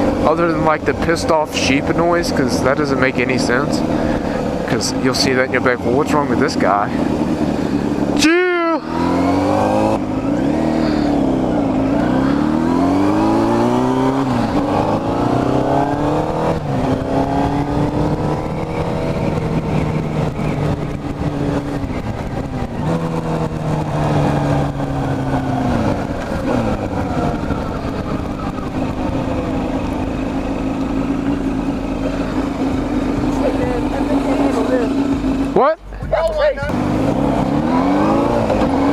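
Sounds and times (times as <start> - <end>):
motorcycle engine shifting gears: 0.0 - 38.9
wind buffeting microphone: 8.9 - 34.2.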